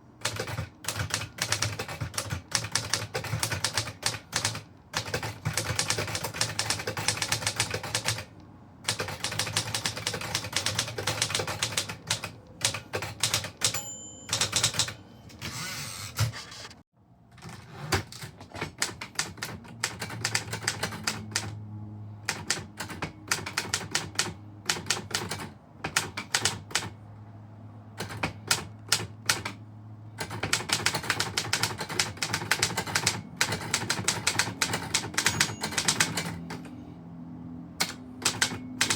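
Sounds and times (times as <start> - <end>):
typewriter key strikes: 0.2 - 8.3, 8.9 - 15.0, 30.2 - 36.7, 37.8 - 38.9
typewriter bell ringing: 13.2 - 15.6, 34.3 - 36.6.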